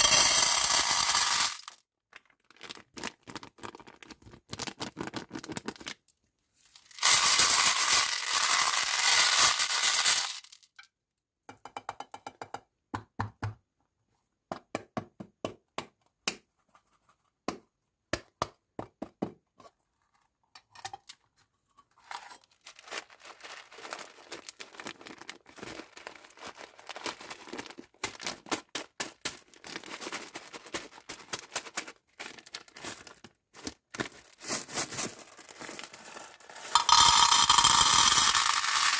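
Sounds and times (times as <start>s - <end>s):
plastic crinkling: 2.1s - 6.0s, 22.0s - 38.9s
plastic packaging ripping: 22.1s - 33.2s.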